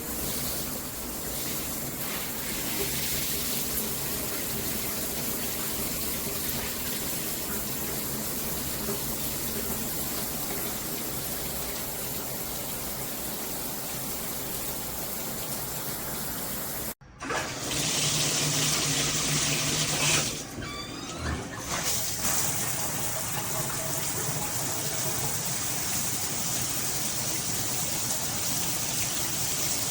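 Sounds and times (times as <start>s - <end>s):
water spraying from shower head: 0.0s - 7.4s.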